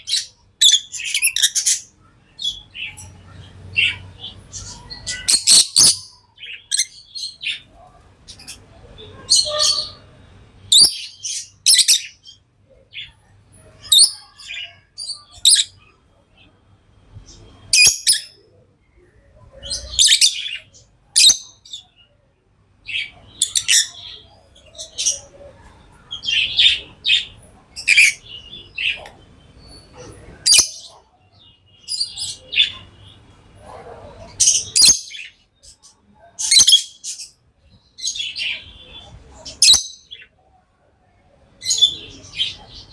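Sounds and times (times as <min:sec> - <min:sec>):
birds chirping shrilly: 0:00.0 - 0:08.6.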